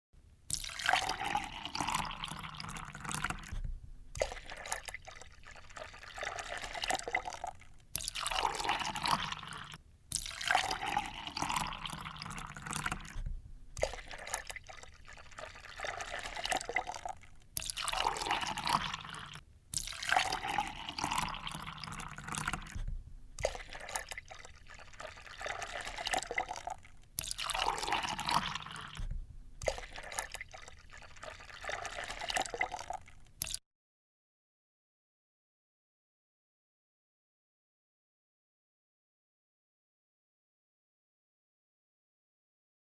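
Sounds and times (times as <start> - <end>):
water pouring into container: 0.5 - 33.6.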